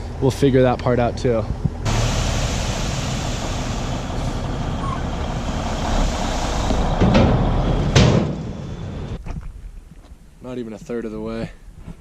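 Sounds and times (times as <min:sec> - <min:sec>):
diesel engine running: 0:01.8 - 0:09.2.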